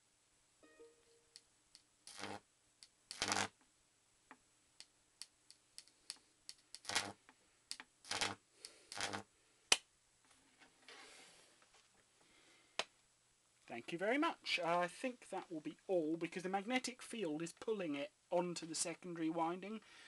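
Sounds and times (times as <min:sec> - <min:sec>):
electric arc snapping and crackling: 0:01.7 - 0:03.6, 0:05.2 - 0:09.8
arc buzzing bursts: 0:02.1 - 0:02.4, 0:03.1 - 0:03.5.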